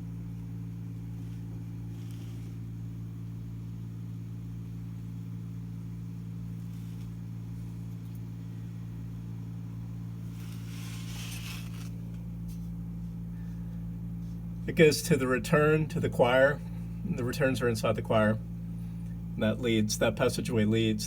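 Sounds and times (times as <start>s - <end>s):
electrical hum of hvac equipment: 0.0s - 21.0s
brief rustle: 10.3s - 12.7s.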